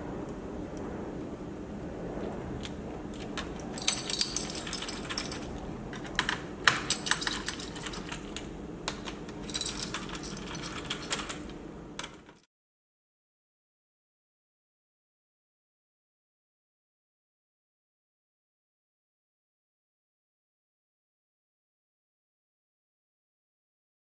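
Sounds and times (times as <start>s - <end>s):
steady low hum: 0.0s - 12.5s.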